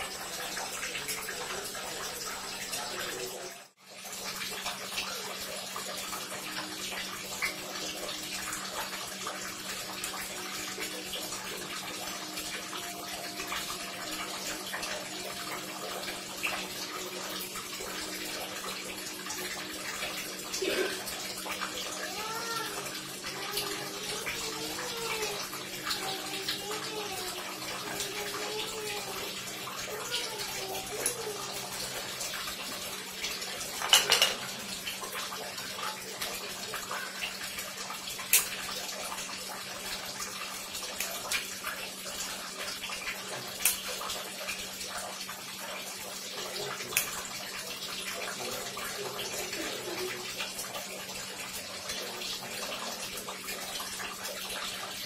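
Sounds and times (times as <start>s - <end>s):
faint voice: 0.0s - 3.7s, 10.0s - 32.8s, 46.2s - 47.0s, 47.6s - 51.0s, 51.6s - 55.0s
water running from tap: 0.0s - 55.0s.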